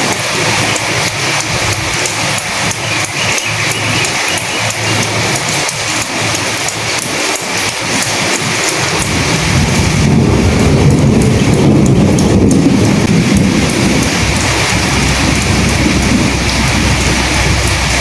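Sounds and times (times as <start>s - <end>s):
rain falling: 0.0s - 18.0s
low rumble: 8.9s - 18.0s.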